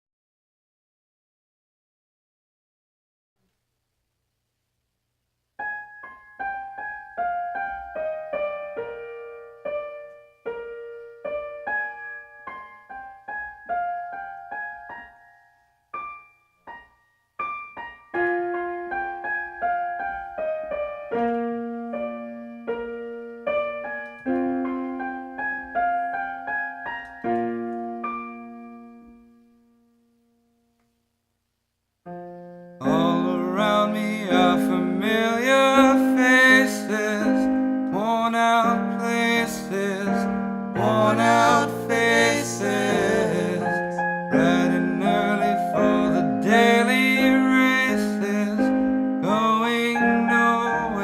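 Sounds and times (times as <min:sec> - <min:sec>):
solo piano melody: 0:05.6 - 0:31.3, 0:32.0 - 0:51.0.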